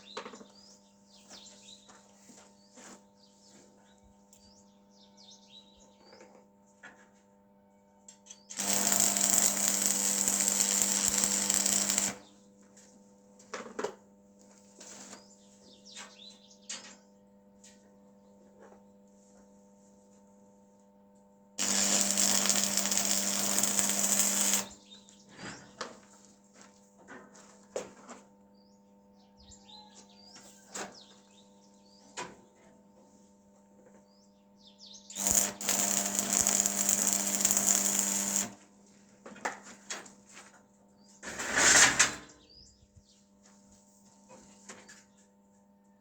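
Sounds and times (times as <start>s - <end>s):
metalworking power tool: 8.5s - 12.2s, 21.6s - 24.8s, 35.1s - 38.6s.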